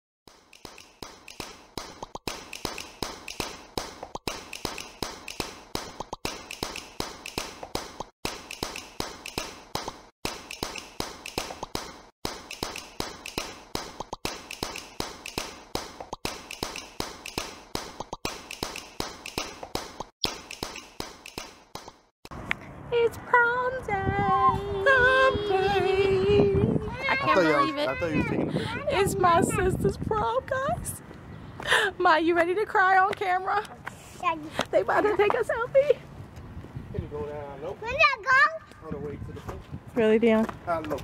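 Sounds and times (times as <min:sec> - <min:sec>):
rhythmic tapping clicks: 0:00.3 - 0:22.1.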